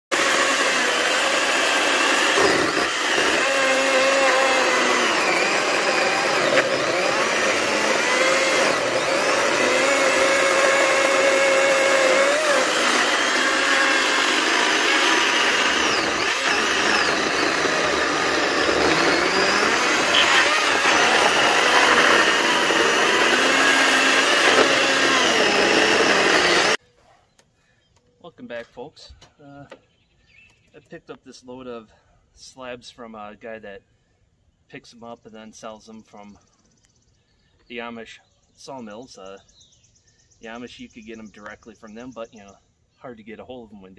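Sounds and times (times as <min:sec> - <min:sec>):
electric chainsaw cutting wood: 0:00.1 - 0:26.8.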